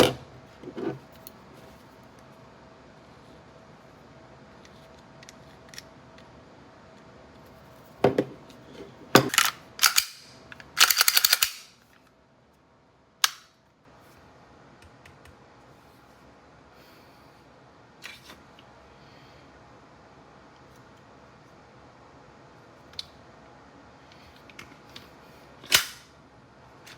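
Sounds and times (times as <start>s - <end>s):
airsoft pistol snaps: 25.7s - 26.0s.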